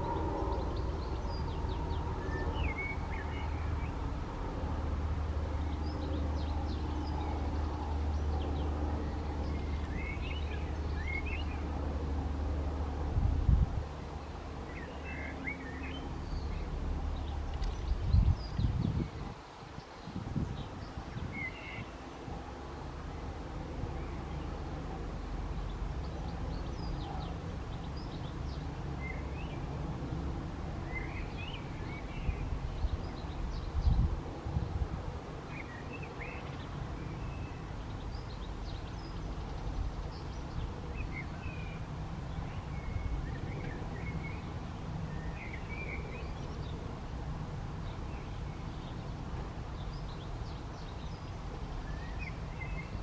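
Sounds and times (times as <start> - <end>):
birds chirping: 0.0 - 13.0, 13.9 - 30.2, 35.5 - 46.9, 47.8 - 53.0
wind rumble on microphone: 0.0 - 53.0.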